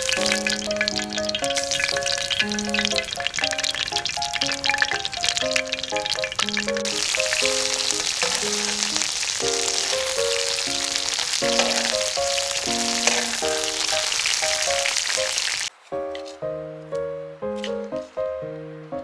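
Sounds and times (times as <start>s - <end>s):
background music with held notes: 0.0s - 15.1s, 15.7s - 19.0s
food sizzling in a pan: 0.0s - 15.7s.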